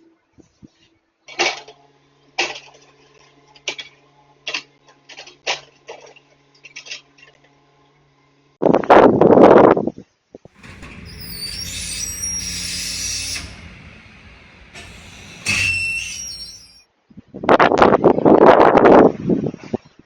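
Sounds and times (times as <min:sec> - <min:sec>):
low machine hum: 0:10.6 - 0:16.8.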